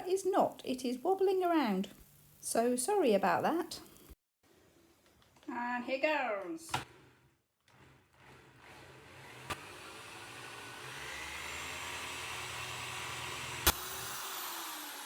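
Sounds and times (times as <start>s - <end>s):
lathe motor running: 7.7s - 15.0s
machine winding down: 7.8s - 15.0s.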